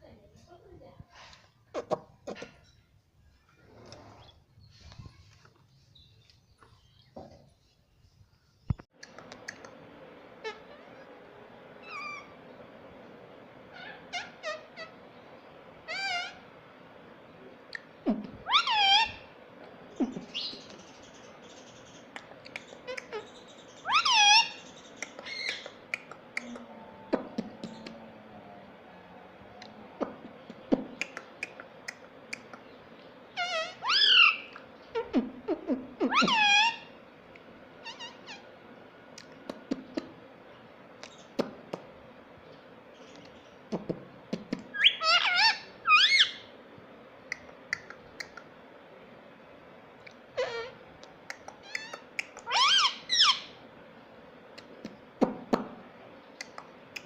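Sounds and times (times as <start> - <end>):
parrot shrill calls: 11.8 - 12.4, 13.7 - 15.0, 15.8 - 16.4, 18.4 - 19.3, 22.8 - 25.7, 33.3 - 35.0, 36.0 - 37.0, 37.8 - 38.5, 44.7 - 46.5, 51.6 - 53.6.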